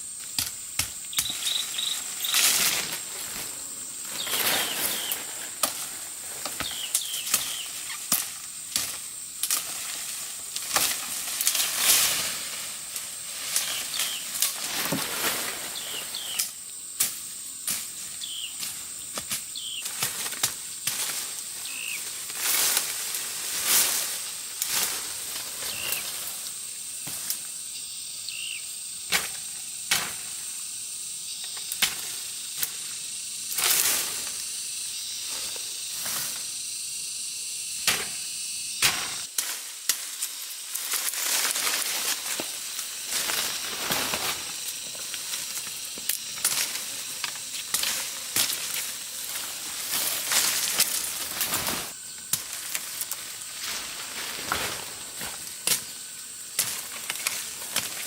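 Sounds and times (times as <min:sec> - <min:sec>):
high-pitched insect chorus: 0:00.0 - 0:58.0
small high chirps: 0:01.1 - 0:02.5.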